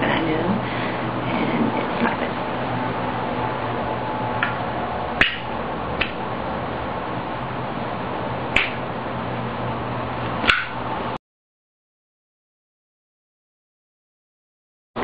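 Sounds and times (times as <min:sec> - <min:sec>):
background hiss and hum: 0:00.0 - 0:11.2.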